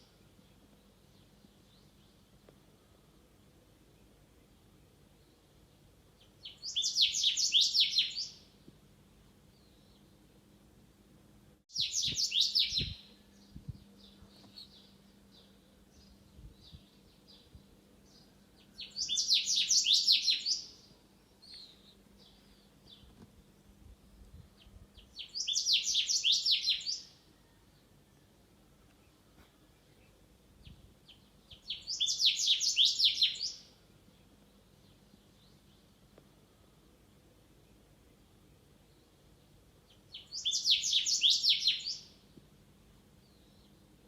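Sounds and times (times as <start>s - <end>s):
faint bird chirps: 11.7s - 23.2s, 24.1s - 36.7s, 39.9s - 42.2s.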